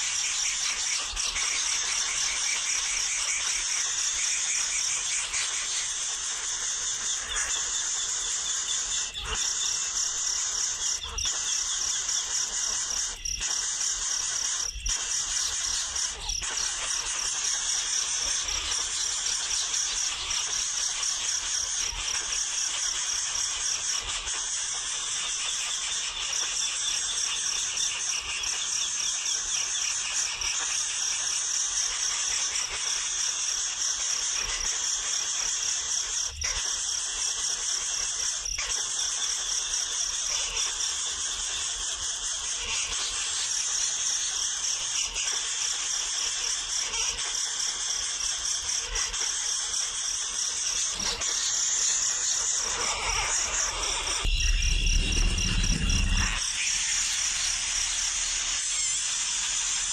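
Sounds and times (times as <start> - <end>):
nestling birds chirping: 0.1 - 30.7, 46.3 - 58.6.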